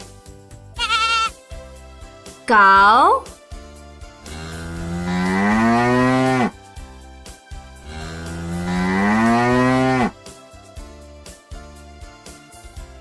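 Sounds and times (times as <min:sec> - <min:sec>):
cow mooing: 0:04.2 - 0:06.6, 0:07.9 - 0:10.2.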